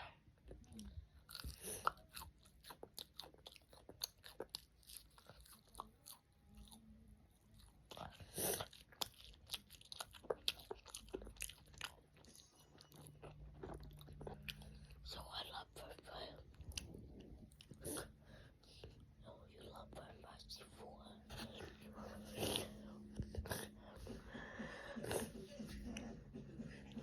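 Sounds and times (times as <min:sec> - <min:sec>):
crunchy chewing: 0:00.5 - 0:15.2.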